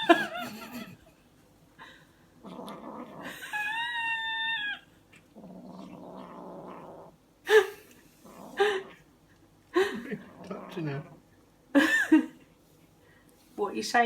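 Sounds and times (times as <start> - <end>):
kitten growling: 0.0 - 1.0, 2.4 - 9.1, 9.8 - 11.2
kitten yowling: 3.2 - 4.9.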